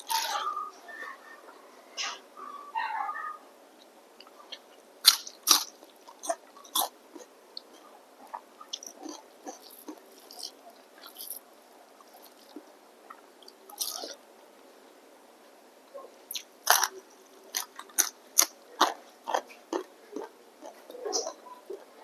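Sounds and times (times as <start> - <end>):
biting and chewing food: 0.0 - 0.6, 4.2 - 14.2, 16.3 - 22.0
sharp crunches: 5.0 - 7.3.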